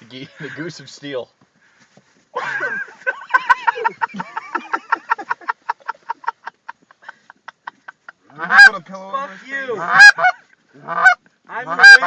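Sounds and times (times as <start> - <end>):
goose clucking calls: 8.3 - 12.0
goose honk: 8.3 - 12.0.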